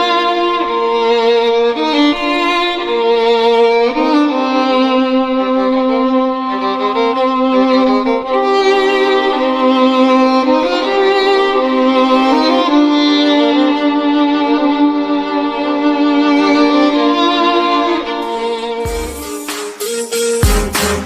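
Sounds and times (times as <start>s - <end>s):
slow instrumental ringtone melody: 18.8s - 21.0s.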